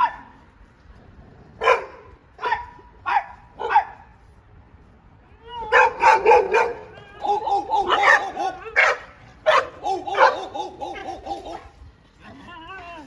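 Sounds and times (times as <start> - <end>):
dog barking: 1.6 - 4.1, 5.7 - 11.7.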